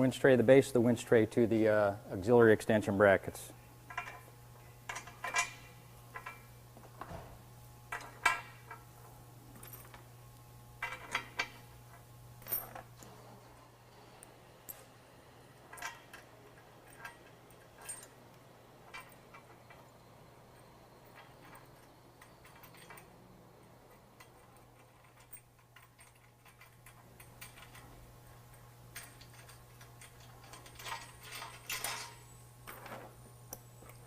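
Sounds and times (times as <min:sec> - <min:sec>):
metal bolts clinking and tapping: 0:03.9 - 0:04.3, 0:04.9 - 0:07.2, 0:07.9 - 0:08.9, 0:10.8 - 0:13.1, 0:15.6 - 0:34.0.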